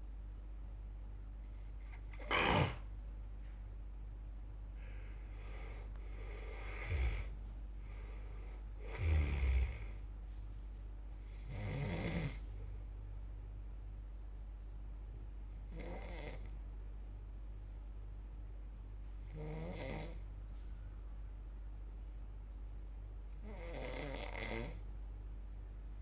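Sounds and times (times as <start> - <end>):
person snoring: 2.2 - 2.9, 5.4 - 8.2, 8.8 - 10.0, 11.4 - 12.4
sharp snort: 2.2 - 2.9, 6.2 - 7.3, 8.9 - 10.0.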